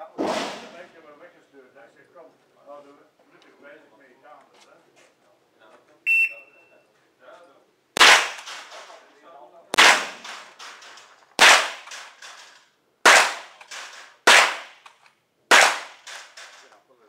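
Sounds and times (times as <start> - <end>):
rifle shots: 8.0 - 9.0, 9.7 - 14.9, 15.5 - 16.6.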